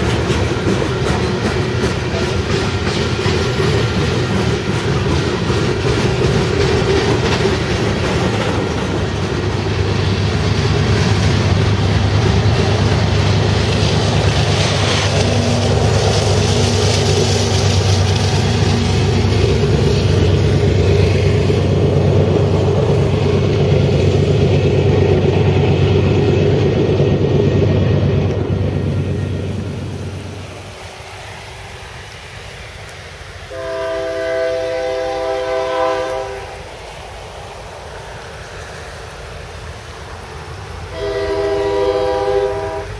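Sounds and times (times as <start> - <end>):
freight train rumbling over rails: 0.0 - 42.9
train air horn chord: 33.5 - 36.6, 40.9 - 42.9.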